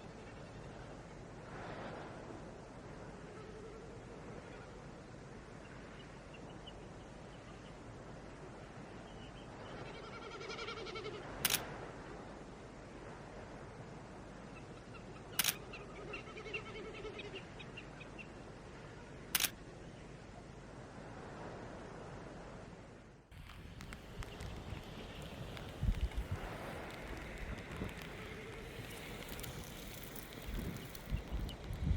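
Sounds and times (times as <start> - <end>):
outdoor background noise: 0.0 - 31.9
camera shutter clicks: 11.4 - 11.6, 15.4 - 15.6.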